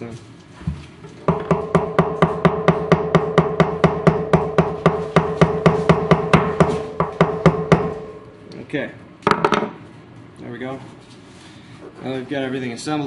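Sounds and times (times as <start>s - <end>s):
quick percussive beat: 1.3s - 8.1s.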